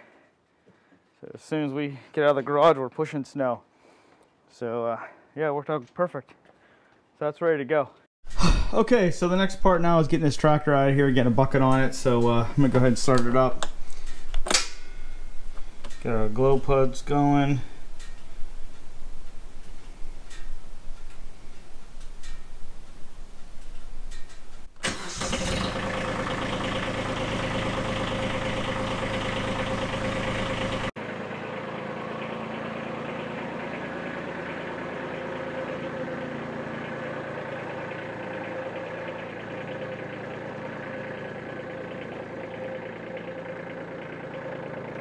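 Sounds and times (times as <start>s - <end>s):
diesel engine cranking: 9.2s - 45.0s
diesel engine idling: 24.8s - 45.0s.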